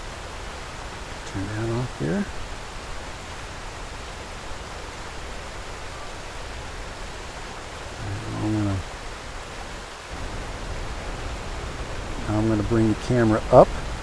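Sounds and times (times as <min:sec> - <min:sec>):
man humming or grunting: 0:08.0 - 0:08.8
wind buffeting microphone: 0:10.1 - 0:14.0.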